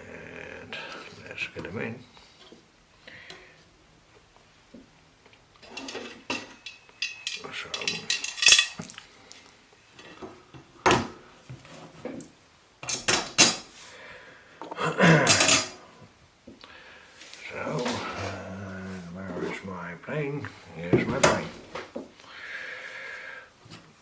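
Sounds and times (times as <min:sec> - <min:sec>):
metal tools clinking on workbench: 0:05.6 - 0:09.0, 0:12.8 - 0:13.6, 0:15.3 - 0:15.8.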